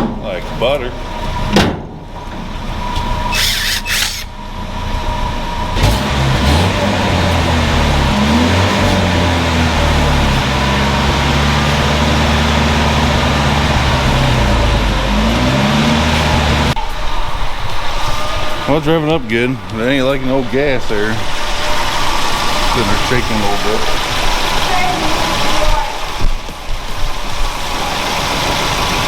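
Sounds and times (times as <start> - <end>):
pickup engine starting and revving: 0.0 - 29.0.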